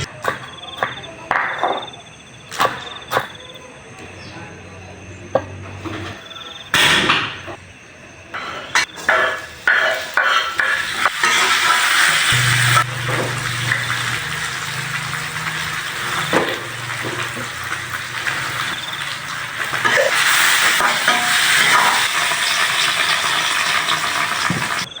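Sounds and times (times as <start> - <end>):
food sizzling in a pan: 9.0 - 25.0.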